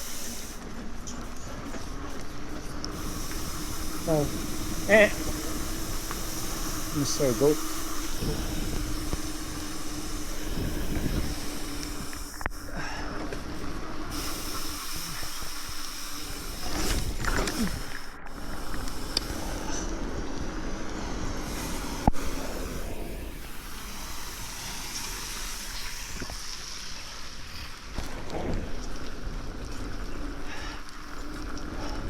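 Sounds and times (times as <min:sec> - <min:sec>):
bike tyres rolling on trail: 0:00.0 - 0:32.0
wind on microphone: 0:08.1 - 0:12.3.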